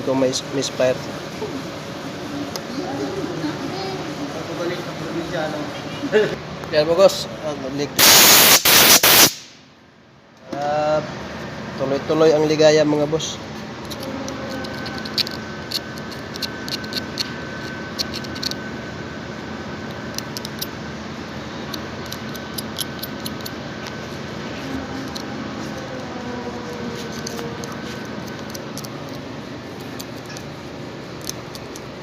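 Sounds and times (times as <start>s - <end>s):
background hiss: 8.0s - 9.6s.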